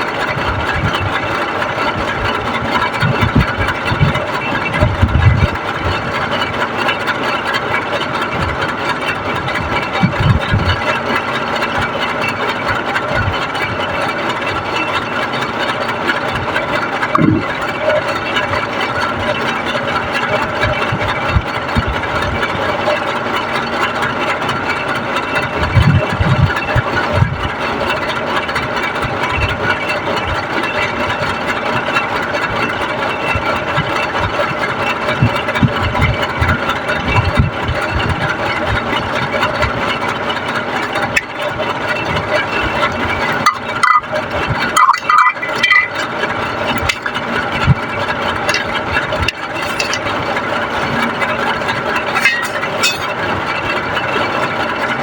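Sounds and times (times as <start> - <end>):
engine running steadily: 0.0 - 55.0.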